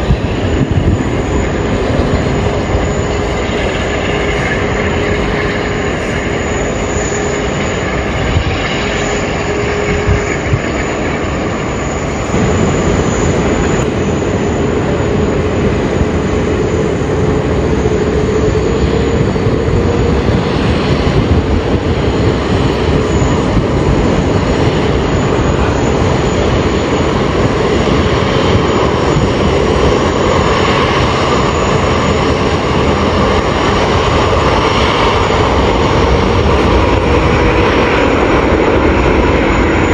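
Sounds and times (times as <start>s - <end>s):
jet engines roaring: 0.0s - 39.9s
rising jet engine whine: 0.0s - 39.9s.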